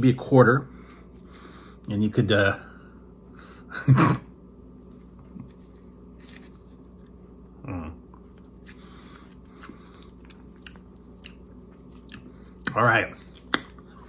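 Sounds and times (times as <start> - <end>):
lip-smacks and mouth clicks: 13.4 - 13.9.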